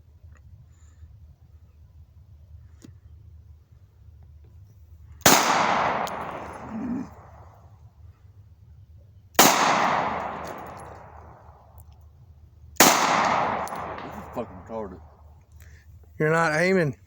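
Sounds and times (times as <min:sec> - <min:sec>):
pistol shots with echo: 0:05.2 - 0:07.6, 0:09.4 - 0:11.8, 0:12.8 - 0:15.3.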